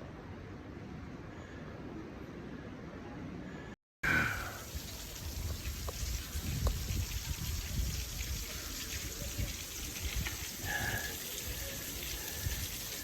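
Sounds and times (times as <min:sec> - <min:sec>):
rushing water: 0:04.0 - 0:13.0.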